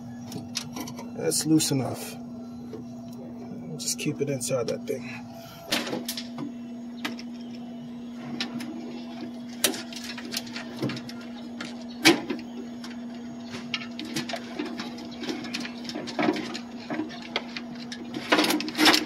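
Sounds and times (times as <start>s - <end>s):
steady low hum: 0.0s - 19.0s
metal parts clicking and rattling: 13.7s - 19.0s.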